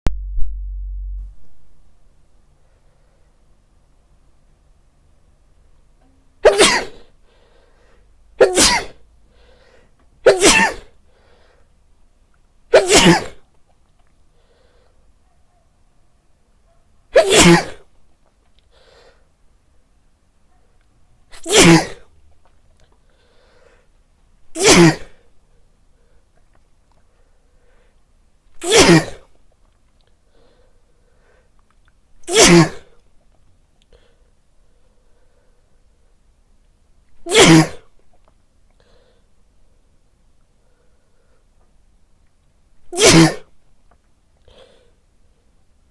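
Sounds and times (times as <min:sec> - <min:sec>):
man sneezing loudly: 0:06.4 - 0:07.1, 0:08.4 - 0:09.0, 0:10.3 - 0:10.9, 0:12.7 - 0:13.4, 0:17.1 - 0:17.8, 0:21.4 - 0:22.0, 0:24.6 - 0:25.2, 0:28.6 - 0:29.2, 0:32.2 - 0:32.9, 0:37.3 - 0:37.9, 0:42.9 - 0:43.5.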